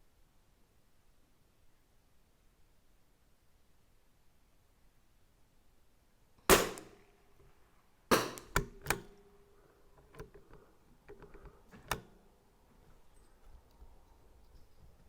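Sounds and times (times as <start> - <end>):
sharp clicks and knocks: 6.4 - 12.3
rifle shot: 6.5 - 7.1, 8.1 - 8.8.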